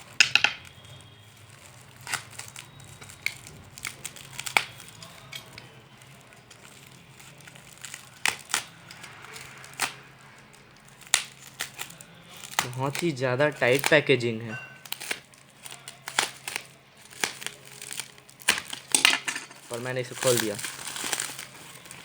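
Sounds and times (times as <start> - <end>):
parcel being torn open: 14.8 - 19.0.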